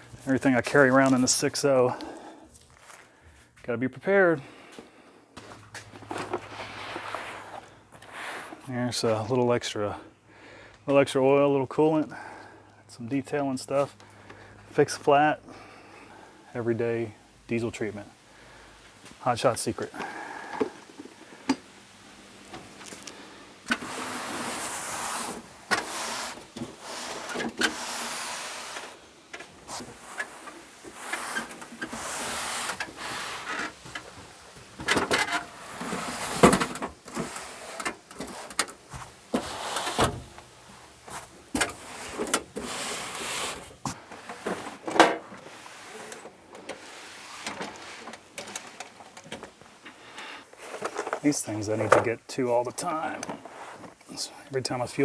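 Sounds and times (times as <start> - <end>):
bottles and gear rustling and sliding: 0.0 - 3.1, 5.4 - 9.3, 22.4 - 52.1, 52.8 - 54.2.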